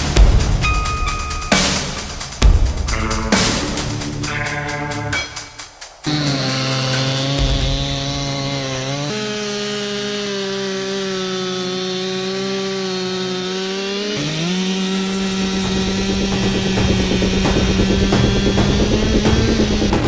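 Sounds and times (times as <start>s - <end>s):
chainsaw cutting wood: 6.1s - 20.0s.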